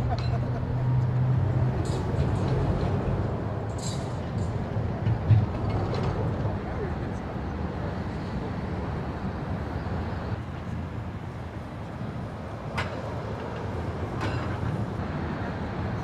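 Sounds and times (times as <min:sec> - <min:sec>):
road traffic rumble: 0:00.0 - 0:16.0.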